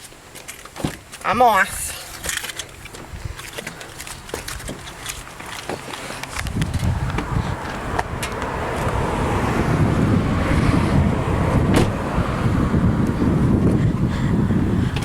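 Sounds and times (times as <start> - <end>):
wind buffeting microphone: 2.8 - 5.4, 6.2 - 15.0.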